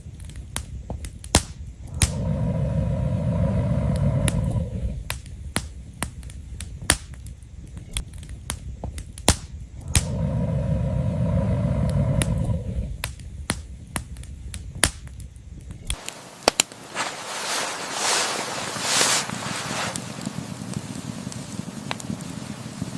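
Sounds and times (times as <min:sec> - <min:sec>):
firewood crackling and popping: 0:00.0 - 0:22.9
low hum: 0:01.8 - 0:05.1, 0:09.7 - 0:13.3
rushing hiss: 0:15.9 - 0:22.9.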